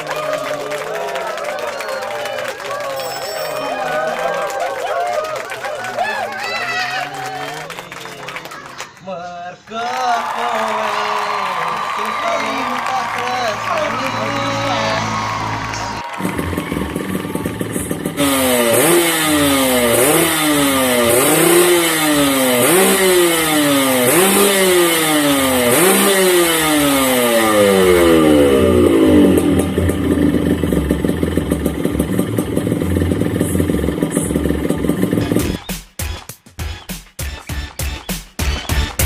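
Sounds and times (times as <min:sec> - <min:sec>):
motorcycle engine revving: 0:13.5 - 0:35.6.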